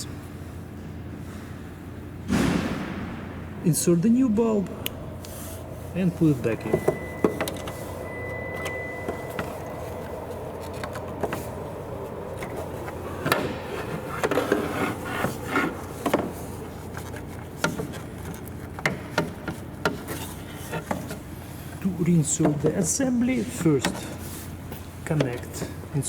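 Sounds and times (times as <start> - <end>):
low hum: 0.0 - 18.8.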